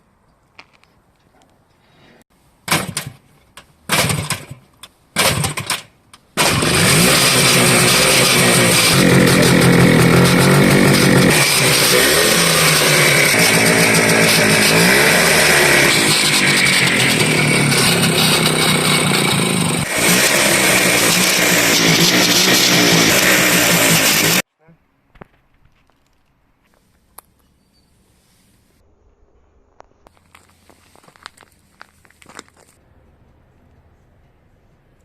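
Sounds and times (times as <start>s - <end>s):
motorcycle engine sputtering and revving: 6.4s - 24.5s.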